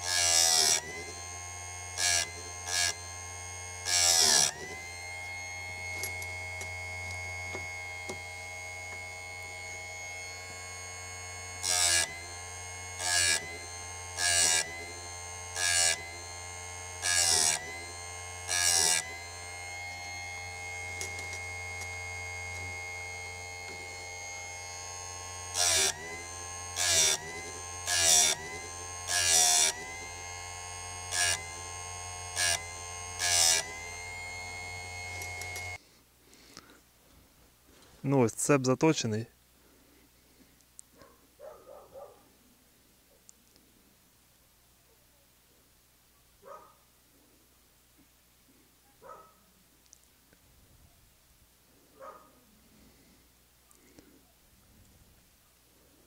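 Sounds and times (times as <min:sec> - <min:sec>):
chain sharpener motor whine: 0:00.0 - 0:36.8, 0:51.8 - 0:54.2
harsh grinding bursts: 0:00.0 - 0:36.8.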